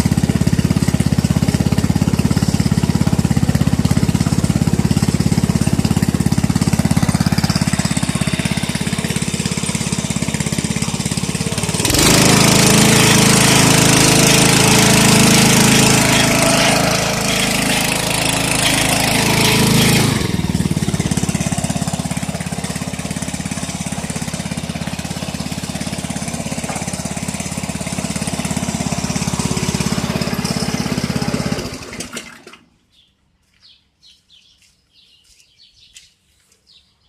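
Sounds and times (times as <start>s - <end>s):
gasoline engine running: 0.0s - 32.6s.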